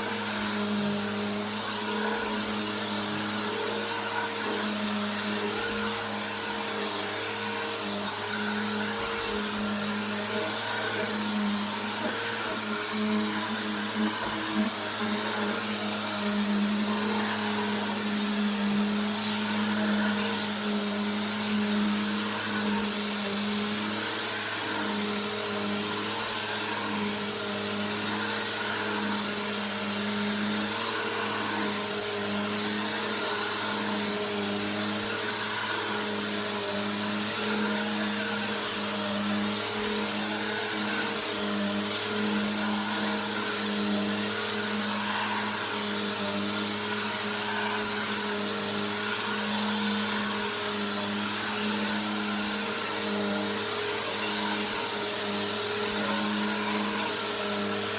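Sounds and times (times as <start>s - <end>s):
vacuum cleaner running: 0.0s - 57.9s.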